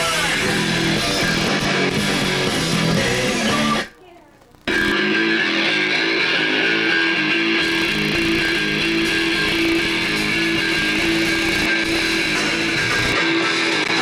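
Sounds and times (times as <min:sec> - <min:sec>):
bass guitar: 0:00.0 - 0:03.9, 0:04.7 - 0:14.0
strummed electric guitar: 0:00.0 - 0:14.0.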